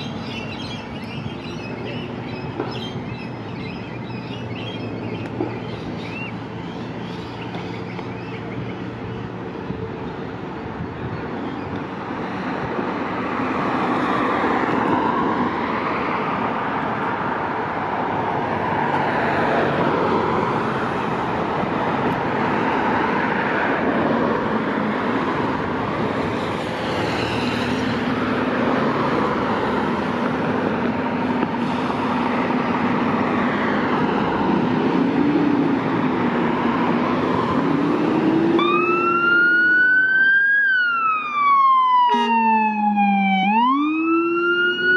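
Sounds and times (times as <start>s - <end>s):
fire truck siren wailing: 37.3s - 44.9s
deep sweeping siren tone: 37.5s - 44.9s.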